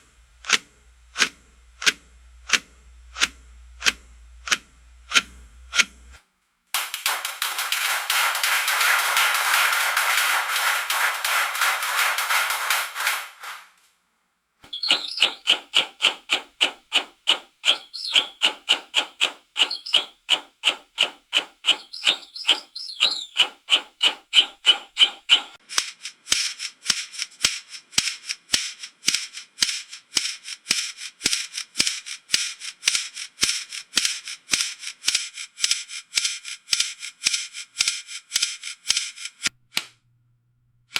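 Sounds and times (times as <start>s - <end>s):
dental handpiece whirring in pulses: 14.7s - 25.6s.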